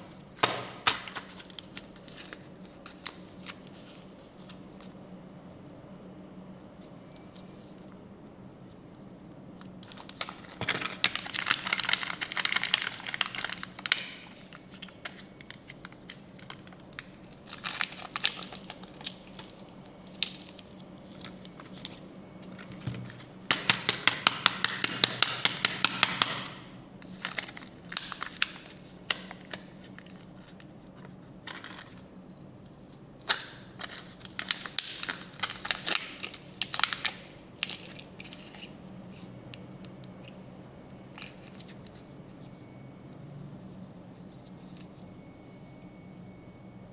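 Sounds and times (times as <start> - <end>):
packaging crinkling and tearing: 0.0 - 4.7, 9.6 - 32.1, 33.2 - 40.4, 41.0 - 42.1.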